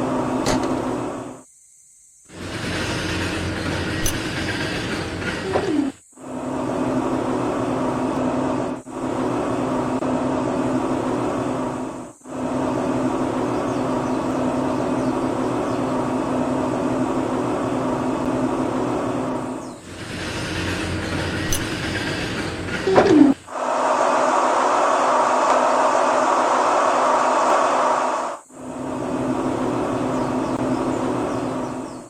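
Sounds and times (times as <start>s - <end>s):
hiss: 23.1s - 29.0s.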